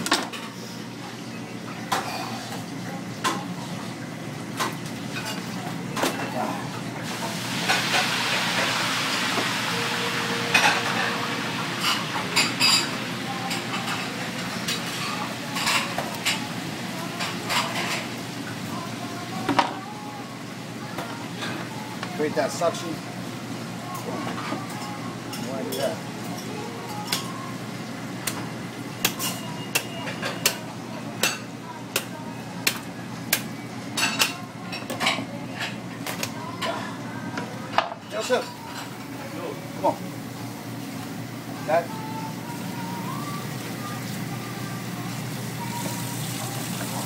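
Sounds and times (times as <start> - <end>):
steady background hum: 0.0 - 47.0
dishes and utensils clinking: 10.4 - 18.1, 29.0 - 30.6, 33.9 - 37.0.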